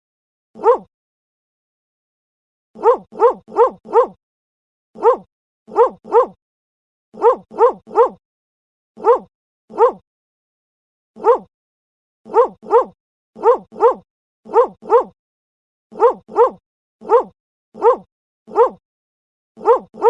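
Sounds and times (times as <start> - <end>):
dog barking: 0.6 - 0.9, 2.8 - 4.2, 5.0 - 6.4, 7.2 - 8.2, 9.0 - 10.0, 11.2 - 11.5, 12.3 - 15.2, 15.9 - 18.8, 19.6 - 20.0.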